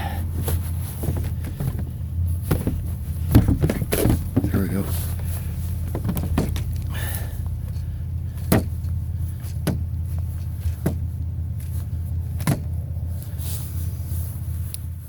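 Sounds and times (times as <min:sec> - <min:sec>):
low motor hum: 0:00.0 - 0:15.0
clicks and knocks of scrap parts: 0:00.4 - 0:06.9.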